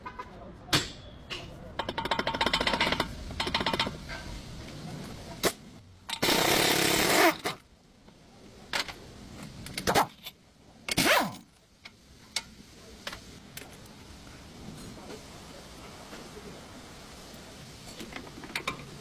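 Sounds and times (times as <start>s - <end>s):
sharp metallic clicks and knocks: 0.0s - 4.3s
power tool bursts: 6.2s - 7.6s.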